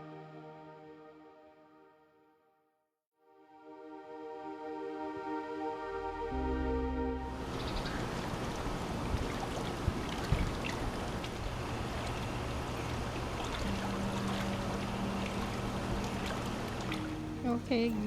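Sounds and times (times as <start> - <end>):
steady low hum: 5.8 - 18.0
pool water sloshing and splashing: 7.9 - 18.0.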